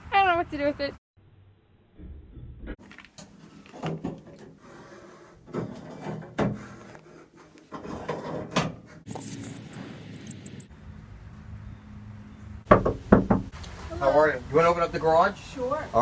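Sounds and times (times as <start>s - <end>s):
high-pitched ticks: 9.1s - 10.7s.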